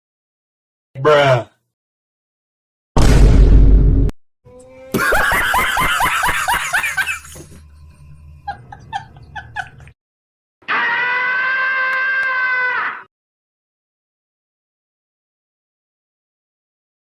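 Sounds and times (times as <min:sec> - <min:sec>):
loud short blast: 0:03.0 - 0:04.1
rapid laughter: 0:05.0 - 0:07.6, 0:08.4 - 0:10.0.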